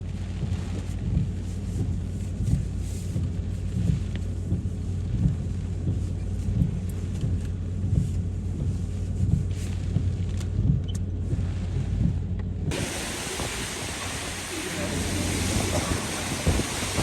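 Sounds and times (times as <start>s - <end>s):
hiss of wind-driven rain: 0.0s - 17.0s
wind buffeting microphone: 8.6s - 17.0s.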